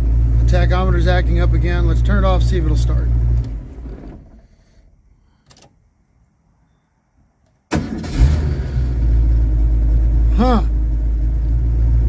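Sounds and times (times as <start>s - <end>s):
car engine shutting off: 0.0s - 5.0s, 7.7s - 12.0s
car engine idling: 0.0s - 5.2s, 7.7s - 12.0s.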